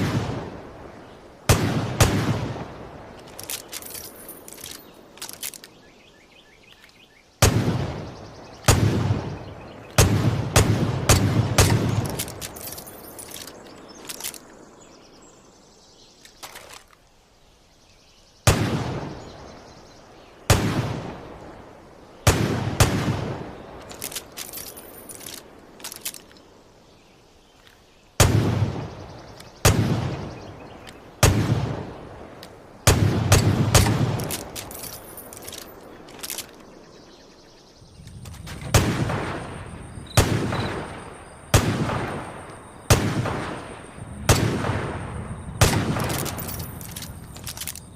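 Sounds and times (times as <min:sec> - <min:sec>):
revolver gunshots echoing: 0:00.0 - 0:00.8, 0:01.5 - 0:04.5, 0:07.4 - 0:13.6, 0:18.5 - 0:19.4, 0:20.5 - 0:21.5, 0:22.2 - 0:25.6, 0:28.2 - 0:36.1, 0:38.4 - 0:47.5.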